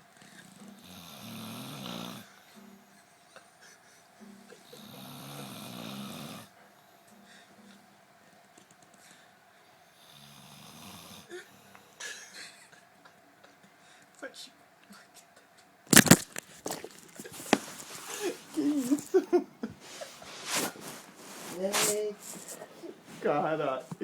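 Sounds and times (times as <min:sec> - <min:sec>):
person snoring: 0:00.8 - 0:02.3, 0:04.7 - 0:06.5.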